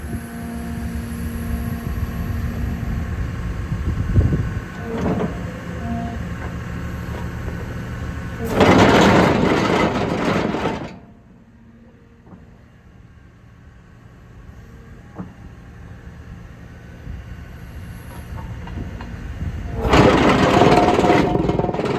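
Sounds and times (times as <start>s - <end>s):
loud harsh compactor noise: 0.0s - 12.0s, 17.6s - 21.9s
excavator running: 0.0s - 21.9s.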